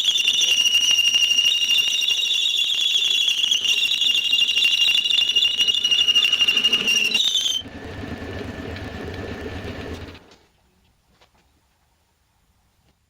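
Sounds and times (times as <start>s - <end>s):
belt sander high-pitched squeal: 0.0s - 7.8s
belt sander humming: 5.0s - 10.3s.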